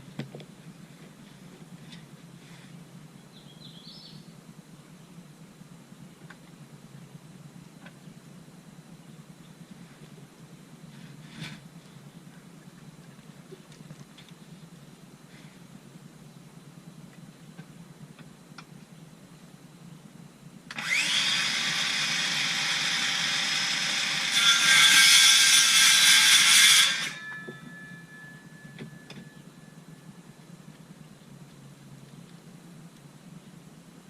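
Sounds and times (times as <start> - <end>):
power tool motor whining: 20.7 - 27.4.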